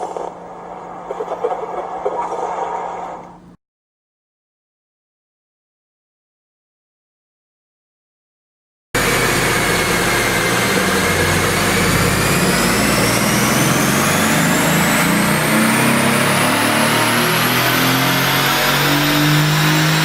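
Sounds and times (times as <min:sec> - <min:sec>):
car engine on dyno: 0:09.0 - 0:20.0
rising whine: 0:09.0 - 0:20.0.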